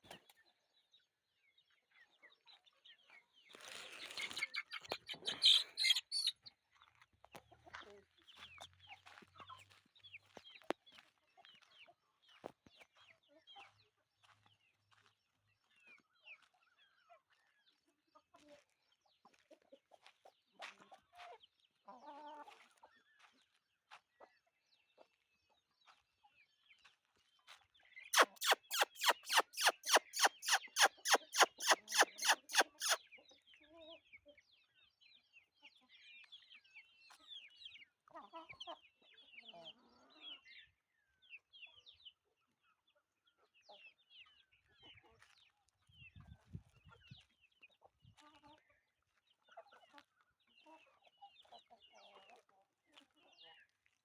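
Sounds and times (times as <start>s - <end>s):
chickens clucking: 3.6s - 6.4s, 28.2s - 33.0s.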